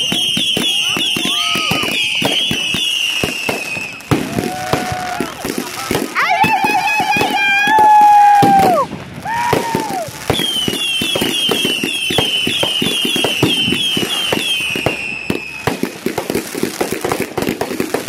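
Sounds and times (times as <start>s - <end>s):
falling firework whistle: 0.0s - 16.0s
high whistling firework warbling: 0.0s - 16.4s
fireworks popping and crackling: 0.0s - 18.0s.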